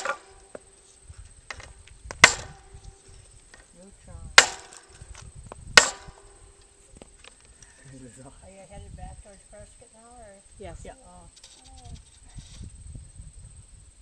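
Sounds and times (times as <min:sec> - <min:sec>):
loud strikes on bicycle wheel: 0:00.0 - 0:00.8, 0:01.5 - 0:03.0, 0:04.4 - 0:05.1, 0:05.7 - 0:06.6.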